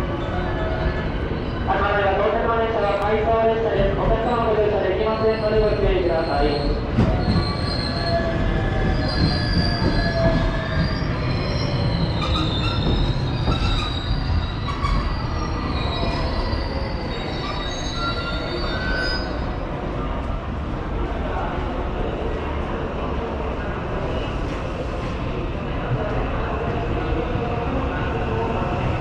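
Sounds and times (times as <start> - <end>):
train rumble: 0.0 - 29.0
train wheels squealing on rails: 0.1 - 1.9, 4.2 - 20.1.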